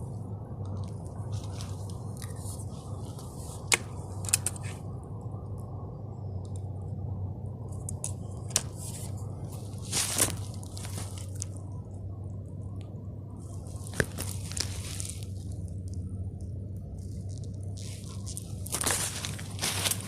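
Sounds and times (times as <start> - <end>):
dull rumble: 0.0 - 20.0
phone handling rubbing and crackling: 0.7 - 4.8, 7.7 - 11.6, 13.6 - 15.8.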